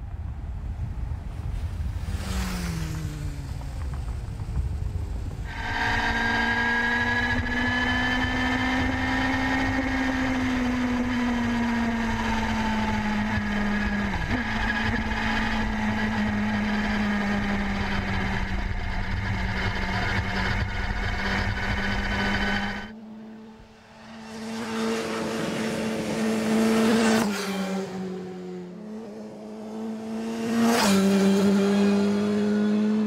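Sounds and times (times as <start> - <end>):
motorcycle engine running: 2.1 - 27.2.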